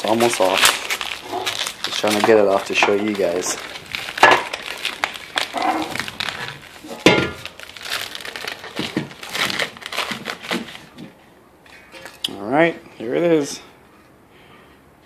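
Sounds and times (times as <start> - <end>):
packaging crinkling: 0.0 - 11.2.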